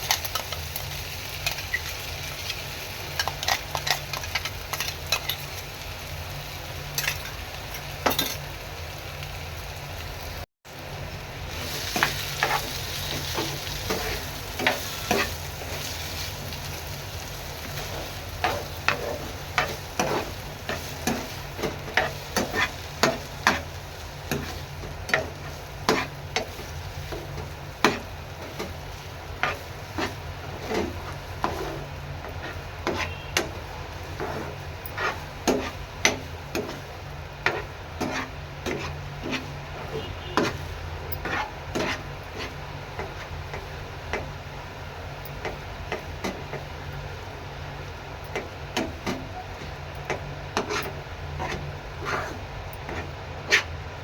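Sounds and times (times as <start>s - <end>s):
food sizzling: 0.0s - 54.0s
spoon scraping cooking pan: 11.5s - 16.7s, 17.4s - 44.3s, 48.3s - 53.8s.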